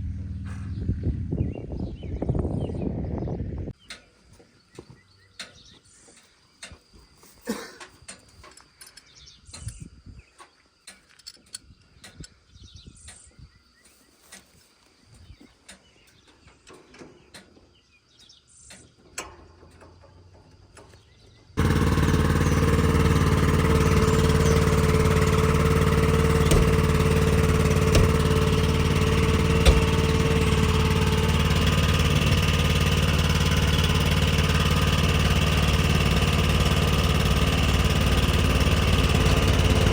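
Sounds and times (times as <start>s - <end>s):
tractor engine running: 21.6s - 39.9s.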